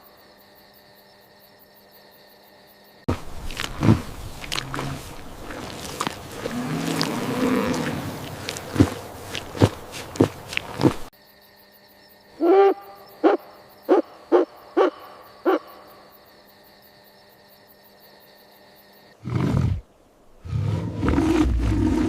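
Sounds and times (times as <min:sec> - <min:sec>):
owl hooting: 0:12.4 - 0:15.9.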